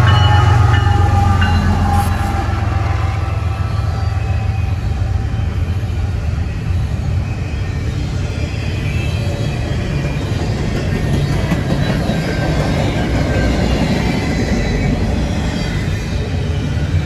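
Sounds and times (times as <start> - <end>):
train wheels rumbling on rails: 0.0 - 17.0.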